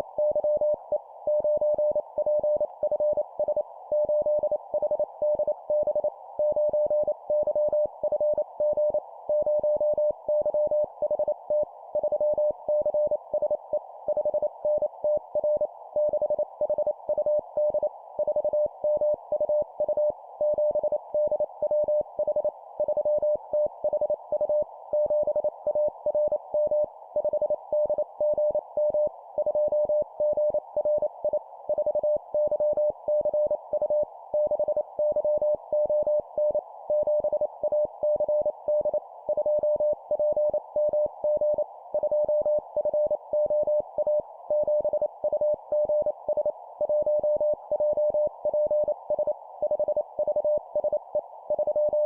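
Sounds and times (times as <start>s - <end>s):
morse code beeps: 14.2s - 52.0s.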